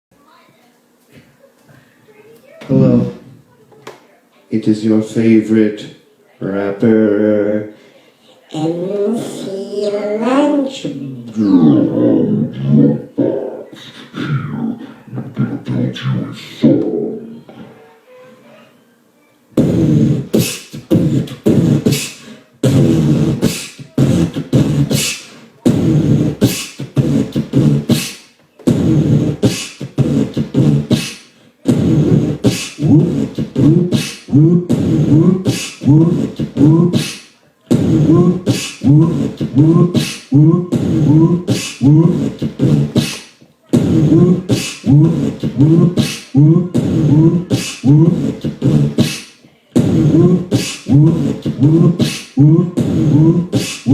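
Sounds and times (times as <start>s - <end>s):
looped beatboxing: 8.5s - 17.3s, 19.6s - 53.9s
vocal part swooping upward: 8.5s - 17.3s, 19.6s - 53.9s.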